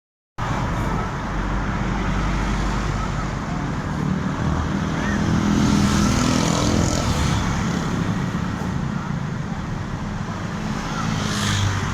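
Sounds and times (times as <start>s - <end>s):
bus engine rumbling: 0.4s - 5.5s
roadside traffic noise: 0.4s - 11.9s.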